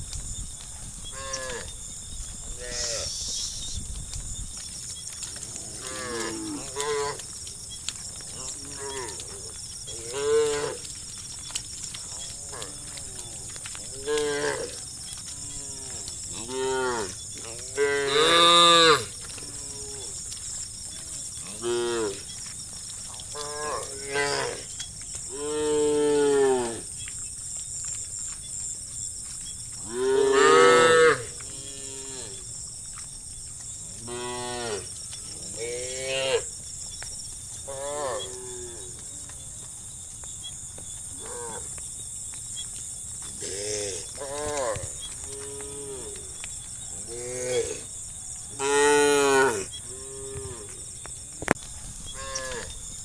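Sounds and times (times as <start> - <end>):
high-pitched background hiss: 2.5 - 4.0
cows mooing: 8.2 - 11.0, 12.1 - 20.2, 23.3 - 24.7, 29.8 - 32.4, 48.6 - 50.8.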